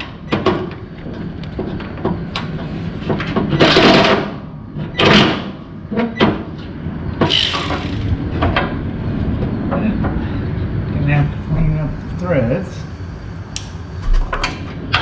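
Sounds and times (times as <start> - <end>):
steady low hum: 0.0 - 15.0
tools clicking: 7.3 - 8.1.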